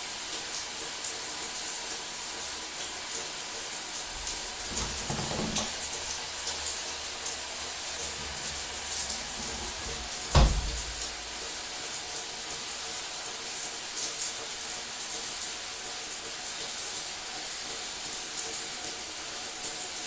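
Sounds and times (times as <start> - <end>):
shower water splashing on tiles: 0.0 - 20.0
dull low thump: 4.1 - 5.8, 8.1 - 11.3.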